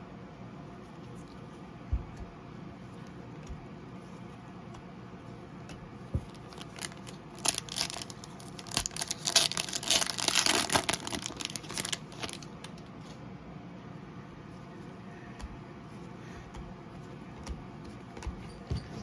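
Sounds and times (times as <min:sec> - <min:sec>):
wrapper tearing and crinkling: 0:06.3 - 0:12.5.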